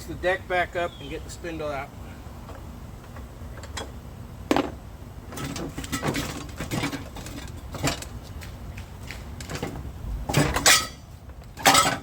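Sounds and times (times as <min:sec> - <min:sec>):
metal clunks and rattles: 0:02.4 - 0:08.2, 0:09.4 - 0:12.0.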